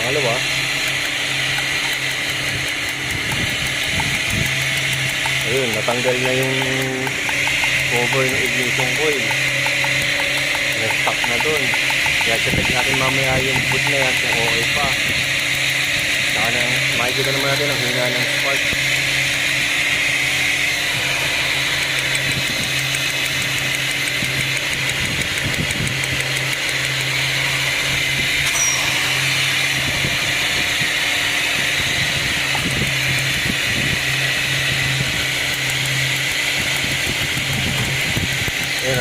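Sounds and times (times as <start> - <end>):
car engine idling: 0.0 - 27.9.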